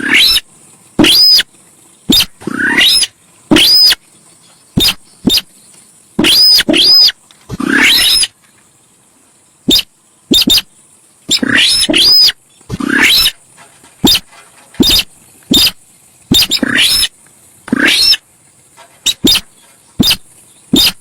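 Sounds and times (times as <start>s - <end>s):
bird harsh short calls: 0.0s - 1.5s, 2.1s - 4.0s, 4.8s - 5.5s, 6.2s - 8.3s, 9.7s - 10.7s, 11.3s - 13.4s, 14.0s - 17.1s, 17.7s - 18.2s, 19.0s - 21.0s
high hiss: 0.0s - 21.0s.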